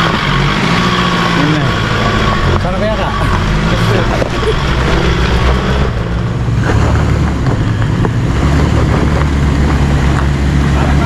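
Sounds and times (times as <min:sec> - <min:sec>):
engine droning: 0:00.0 - 0:11.0
wind noise: 0:03.2 - 0:11.0.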